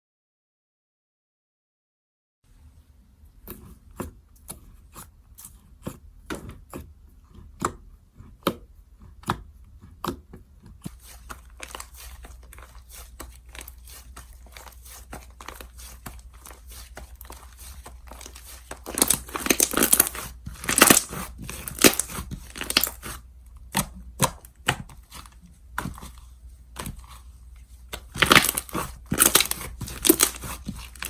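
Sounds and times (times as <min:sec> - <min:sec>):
slime clicking and popping: 0:18.9 - 0:23.1.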